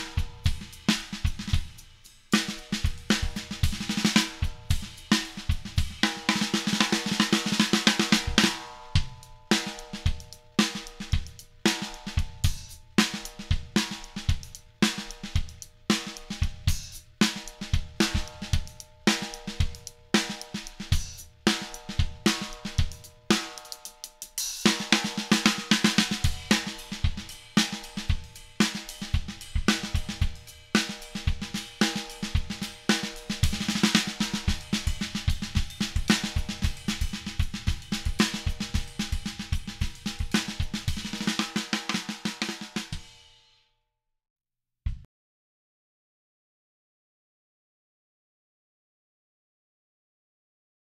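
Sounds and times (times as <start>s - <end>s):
crash cymbals: 0.0s - 42.0s
hi-hat: 0.0s - 43.0s
kick drum: 44.9s - 45.1s.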